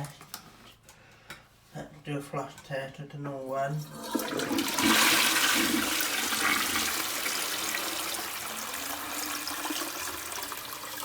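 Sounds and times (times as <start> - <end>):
toilet flushing: 3.8 - 11.0.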